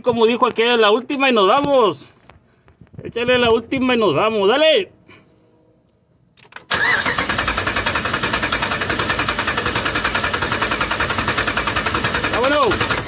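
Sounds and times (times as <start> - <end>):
engine cranking on starter: 6.4 - 13.0.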